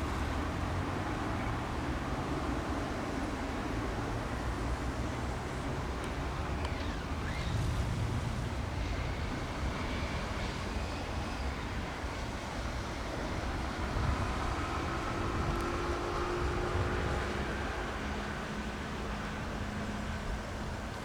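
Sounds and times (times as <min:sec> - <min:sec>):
distant propeller aircraft drone: 0:00.0 - 0:21.0.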